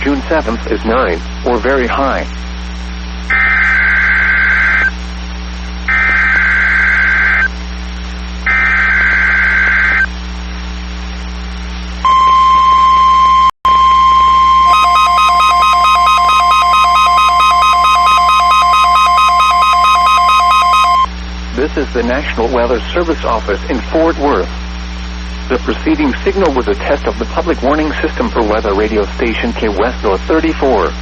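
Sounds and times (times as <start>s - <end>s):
steady warning alarm tone: 12.0s - 21.1s
rapid pulsing electronic beeping: 14.6s - 21.1s
raspy digital data bursts: 14.7s - 21.1s.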